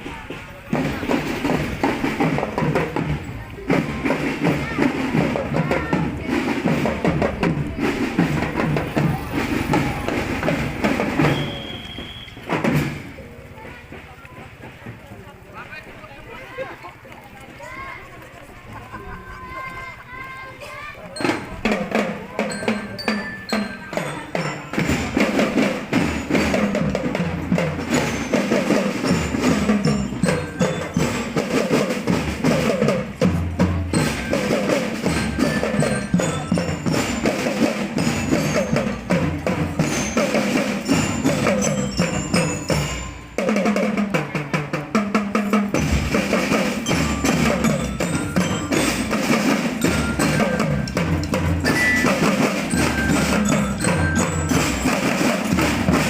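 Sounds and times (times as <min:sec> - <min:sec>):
parade drums and wooden knocks: 0:00.0 - 0:56.0
ringing bell-like notes: 0:34.0 - 0:43.7, 0:46.6 - 0:56.0.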